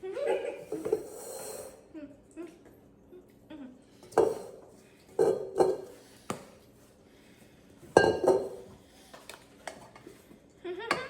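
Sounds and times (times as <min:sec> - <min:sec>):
kitchen utensils knocking on counter: 0:08.0 - 0:08.6.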